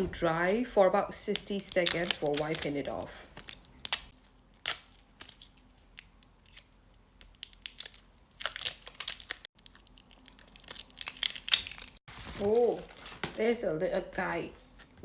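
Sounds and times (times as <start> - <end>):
cardboard rustling: 12.1 - 13.4.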